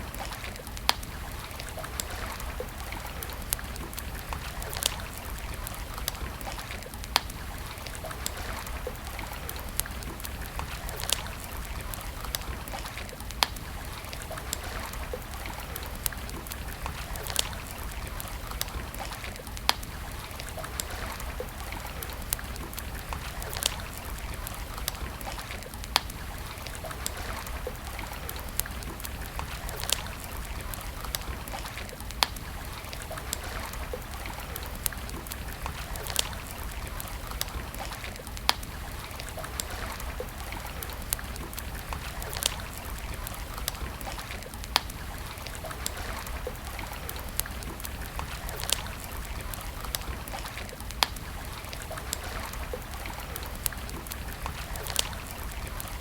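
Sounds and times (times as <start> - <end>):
campfire crackling and popping: 0.0 - 56.0.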